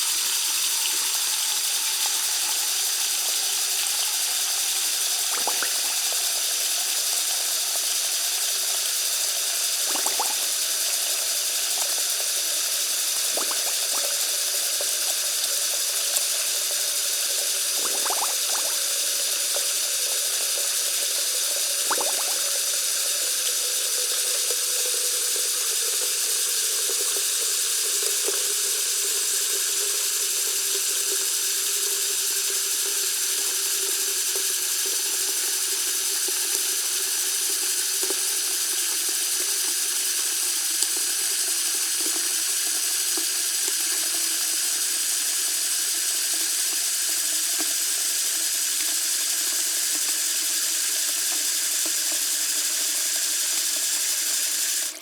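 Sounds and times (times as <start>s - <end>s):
faucet running into sink: 0.0s - 55.0s
small water splashes: 5.3s - 6.2s, 9.9s - 10.6s, 13.3s - 14.3s, 17.8s - 18.9s, 21.8s - 22.4s.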